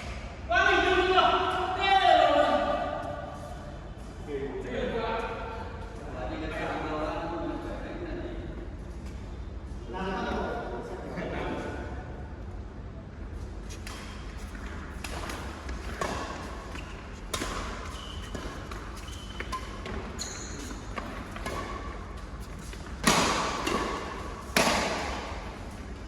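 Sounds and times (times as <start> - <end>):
racket hitting shuttlecock: 13.9 - 25.9
short high squeaks: 19.0 - 20.9.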